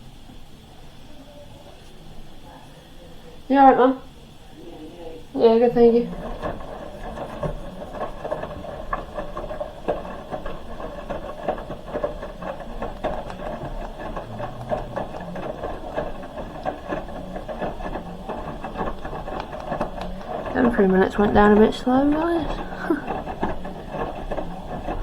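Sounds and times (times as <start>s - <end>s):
washing machine humming: 0.0s - 25.0s
drum clicks and knocks: 5.6s - 25.0s.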